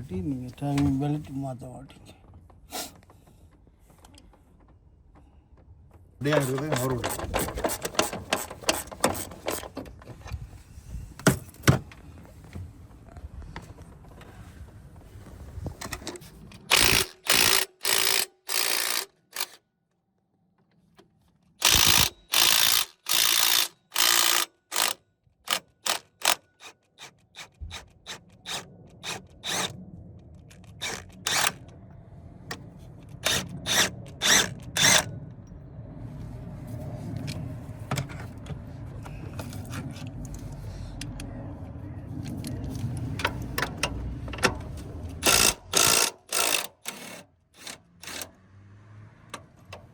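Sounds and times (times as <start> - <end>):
ratchet wrench clicking: 16.7 - 19.6, 21.6 - 29.8, 30.7 - 31.6, 33.2 - 35.1, 45.2 - 48.3.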